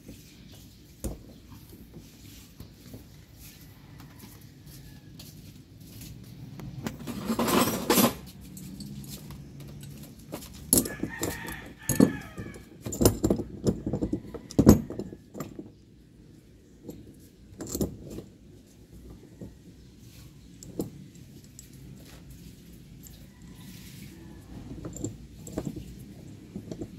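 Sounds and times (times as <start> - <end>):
metallic clinks and knocks: 6.8 - 15.8, 16.8 - 18.4, 20.5 - 26.9.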